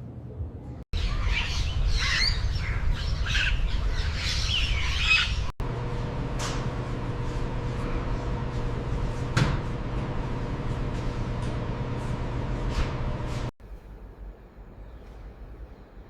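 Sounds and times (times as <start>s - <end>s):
birds squawking and chirping: 1.0s - 5.5s.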